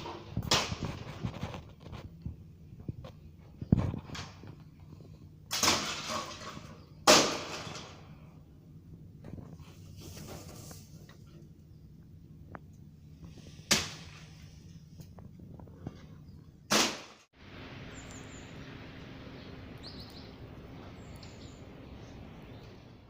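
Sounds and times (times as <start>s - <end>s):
roofing sheet pieces crashing: 5.5s - 8.1s
faint bird chirps: 17.9s - 22.8s.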